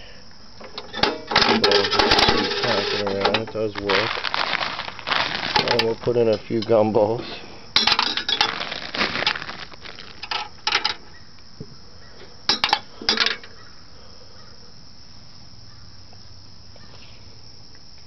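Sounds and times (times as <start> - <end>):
gumballs clattering in a machine: 1.4 - 6.0.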